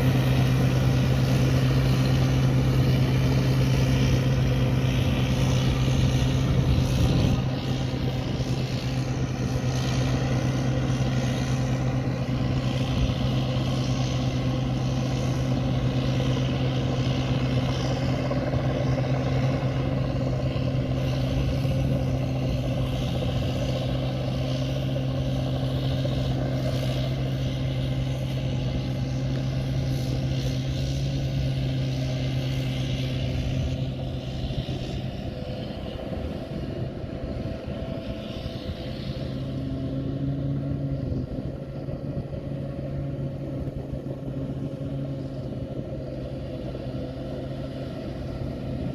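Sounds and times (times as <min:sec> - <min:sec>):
combine harvester engine drone: 0:00.0 - 0:48.9.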